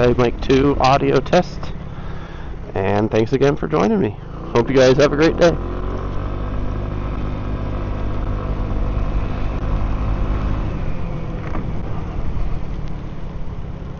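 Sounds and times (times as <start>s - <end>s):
road and wind noise: 0.0s - 13.9s
scooter engine running: 4.2s - 13.9s.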